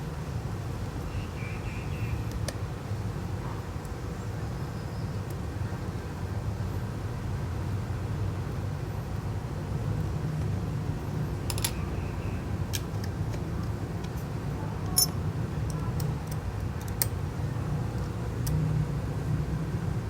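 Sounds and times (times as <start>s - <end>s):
low background hum: 0.0s - 20.0s
tools clicking and tapping: 11.5s - 11.8s, 12.7s - 17.2s.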